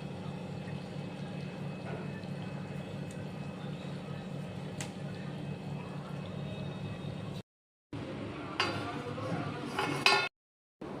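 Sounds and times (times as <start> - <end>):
metal utensil clinking on pot: 9.8 - 10.3.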